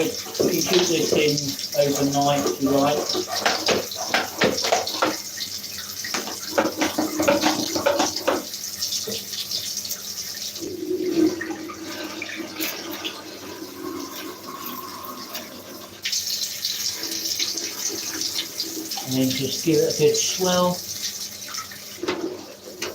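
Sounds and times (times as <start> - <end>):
tap water splashing into plastic bin: 0.0 - 5.4, 6.0 - 9.3
plastic bin knocking: 3.4 - 5.2, 6.2 - 8.4.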